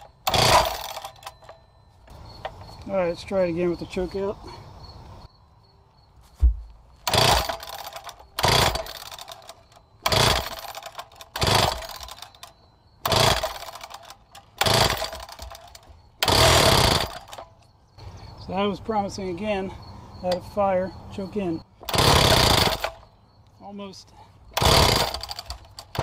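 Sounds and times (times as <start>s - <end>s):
recoil starter pulls: 0.0s - 2.6s, 7.0s - 17.5s, 21.8s - 23.0s, 24.5s - 26.0s
saw engine cranking: 0.0s - 2.8s, 7.0s - 17.7s, 21.8s - 23.1s, 24.5s - 26.0s.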